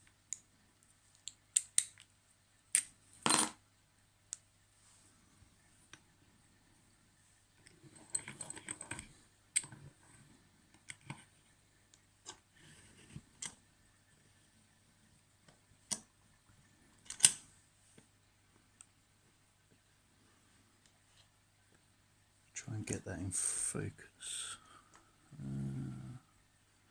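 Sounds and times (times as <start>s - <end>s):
lock picking metal clicks: 1.2s - 2.1s, 17.1s - 17.4s.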